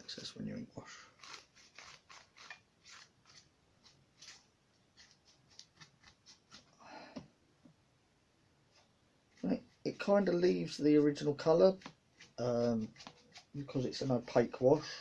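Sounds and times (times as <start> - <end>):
paintbrush scratching on paper: 1.2 - 6.7, 8.7 - 14.8.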